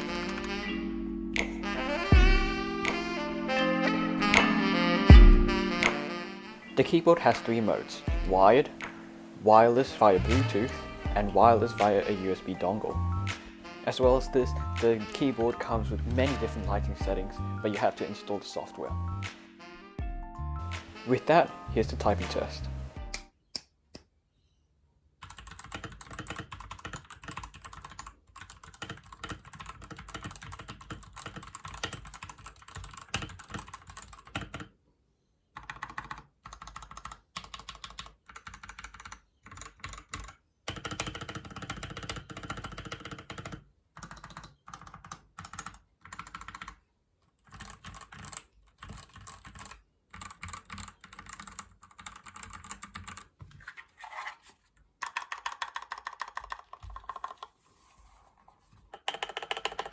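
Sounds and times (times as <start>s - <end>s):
fast typing on mechanical keyboard: 25.2s - 34.7s, 35.6s - 53.4s, 55.0s - 57.5s, 59.0s - 59.9s.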